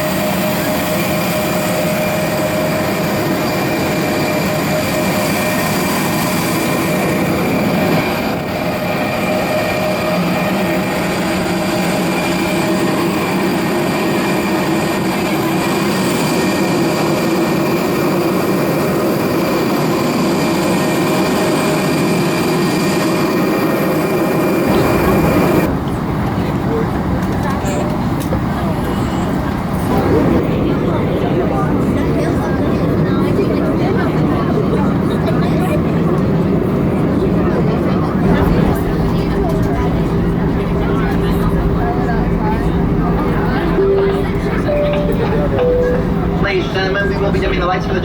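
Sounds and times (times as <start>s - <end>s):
airplane cabin rumble: 23.6s - 48.0s.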